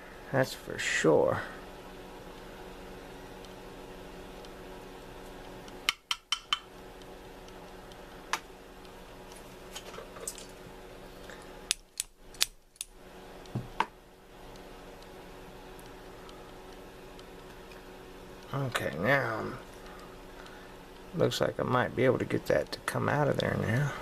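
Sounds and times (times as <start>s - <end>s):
metallic clicks of lock parts: 11.7s - 12.9s.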